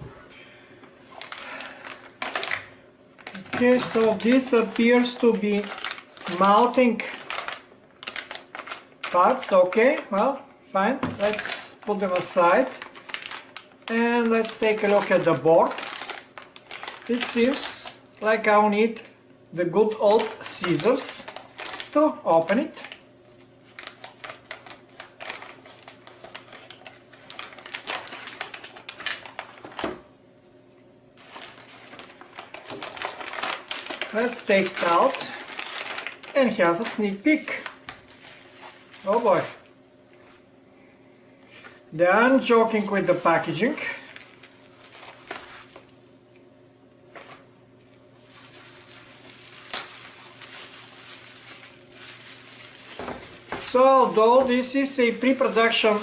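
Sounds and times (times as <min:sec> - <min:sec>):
steady low hum: 0:00.0 - 0:56.0
packaging rustling: 0:00.9 - 0:10.3, 0:11.2 - 0:18.3, 0:20.0 - 0:30.0, 0:31.2 - 0:40.4, 0:42.4 - 0:46.5, 0:47.1 - 0:47.5, 0:48.2 - 0:56.0.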